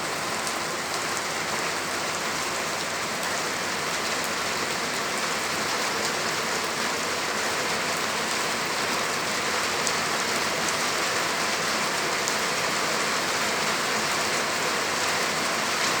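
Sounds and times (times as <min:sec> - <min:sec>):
heavy rain pattering: 0:00.0 - 0:16.0.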